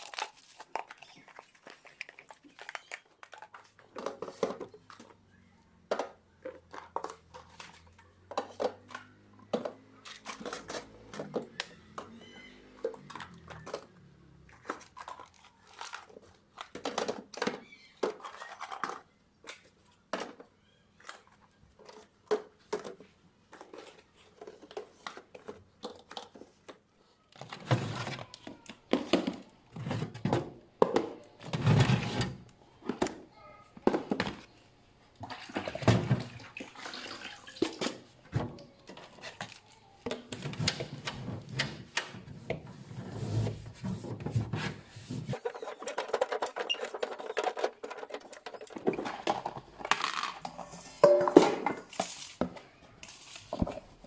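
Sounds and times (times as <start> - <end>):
plastic bags crinkling: 0.0 - 4.0
containers knocking and clicking: 2.5 - 5.2, 5.8 - 15.4, 16.3 - 20.5, 21.8 - 34.5, 43.9 - 52.7.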